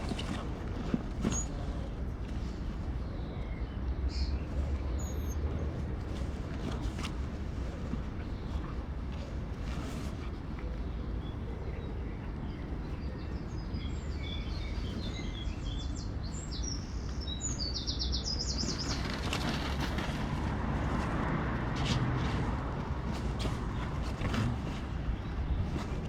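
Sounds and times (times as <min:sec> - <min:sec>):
rustle: 0:00.0 - 0:10.9, 0:18.6 - 0:26.0
low outdoor rumble: 0:00.0 - 0:26.0
songbird twittering: 0:11.2 - 0:19.2.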